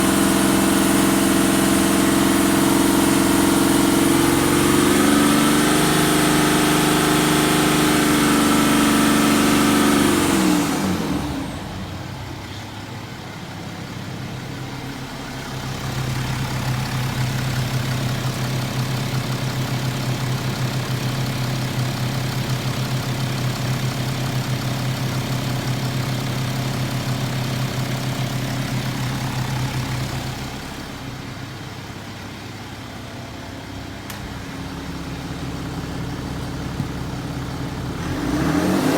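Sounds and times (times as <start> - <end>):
diesel engine revving: 0.0 - 12.8, 21.7 - 38.9
engine tapping: 11.8 - 38.9.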